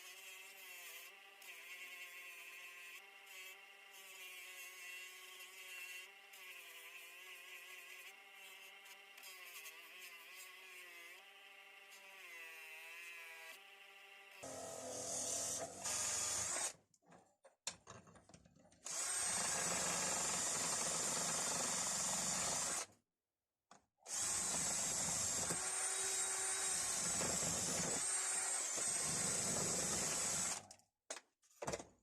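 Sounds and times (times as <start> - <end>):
bench grinder whining: 14.4 - 16.8.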